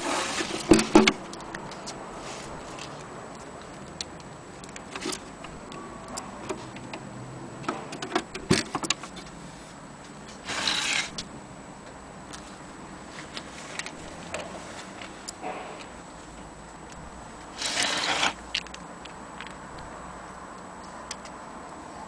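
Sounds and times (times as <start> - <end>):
rasping scraping noise: 0.0 - 1.2, 9.1 - 11.3, 17.5 - 18.7.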